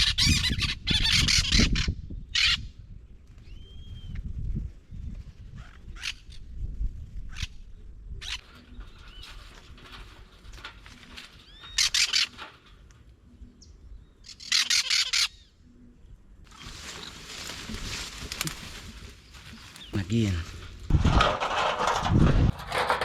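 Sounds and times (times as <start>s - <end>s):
parrots squawking: 14.3s - 15.4s.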